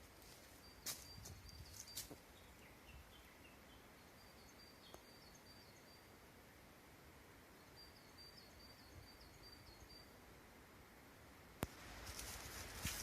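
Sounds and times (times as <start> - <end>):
faint bird chirping: 0.0 - 6.7, 7.4 - 10.4.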